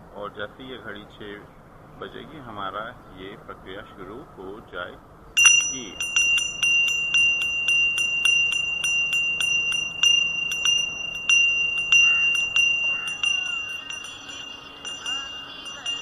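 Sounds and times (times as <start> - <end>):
hand bell ringing: 5.4 - 16.0.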